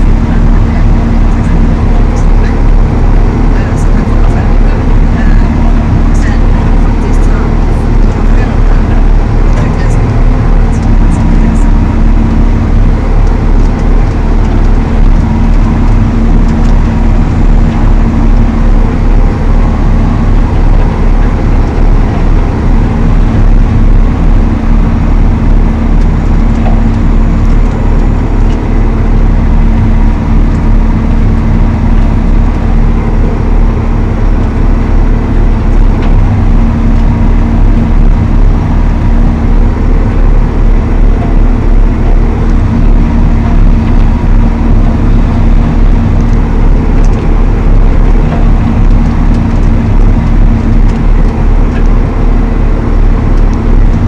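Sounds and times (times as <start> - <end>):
tractor diesel engine running: 0.0 - 54.0.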